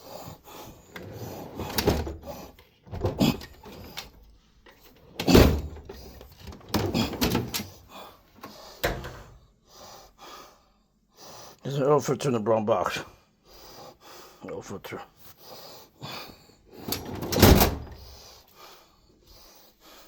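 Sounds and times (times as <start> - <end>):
metal drawers sliding open and shut: 0.9 - 4.2, 4.9 - 7.8, 8.8 - 9.4, 16.8 - 18.2.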